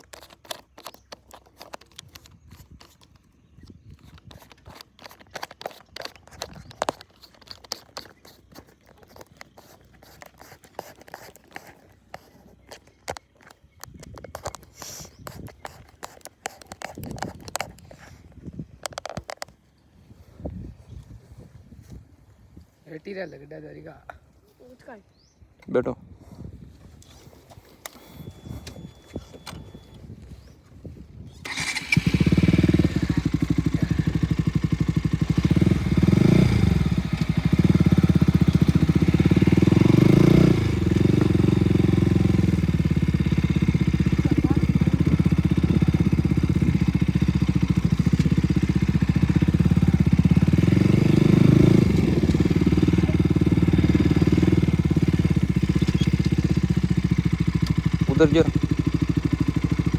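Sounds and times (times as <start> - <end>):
motorcycle engine running: 31.4 - 59.9.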